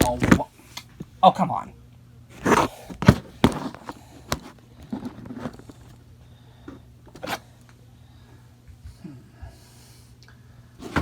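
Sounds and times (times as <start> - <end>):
plastic toys rustling: 2.4 - 6.0.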